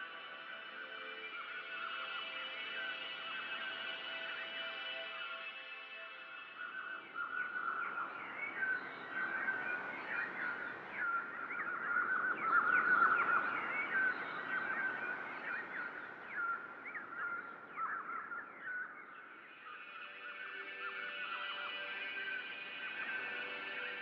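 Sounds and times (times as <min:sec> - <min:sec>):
small birds chirping: 0:06.5 - 0:19.8.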